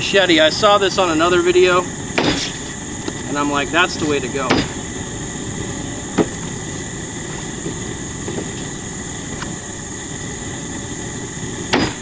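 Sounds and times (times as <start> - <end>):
high insect drone: 0.0 - 12.0
low rumbling noise: 0.0 - 12.0
machete chopping corn: 2.2 - 3.2, 3.9 - 4.8, 11.7 - 12.0.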